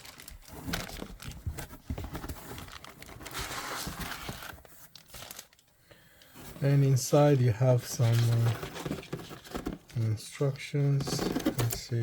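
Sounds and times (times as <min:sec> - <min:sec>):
packaging rustling and crinkling: 0:00.0 - 0:05.7, 0:07.8 - 0:10.0, 0:11.0 - 0:12.0.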